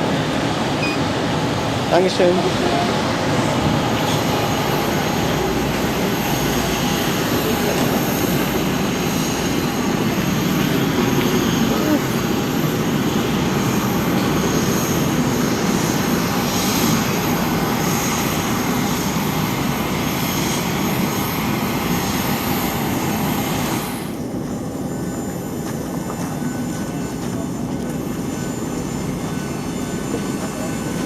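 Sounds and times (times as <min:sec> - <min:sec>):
parked airliner rushing noise: 0:00.0 - 0:31.0.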